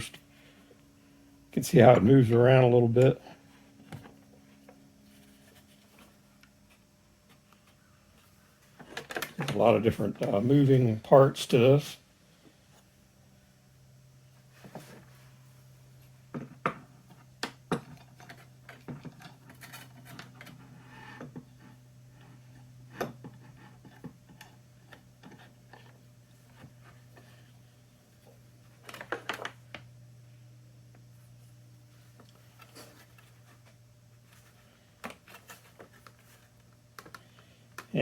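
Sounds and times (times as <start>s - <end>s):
steady low hum: 0.0s - 38.0s
clicks and knocks of handling: 8.8s - 10.4s, 16.3s - 27.4s, 32.2s - 38.0s.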